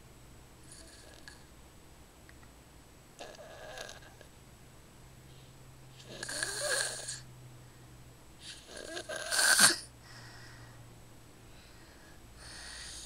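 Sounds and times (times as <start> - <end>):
person snoring: 0.7 - 1.4, 6.0 - 7.2, 8.4 - 9.9, 12.4 - 13.0.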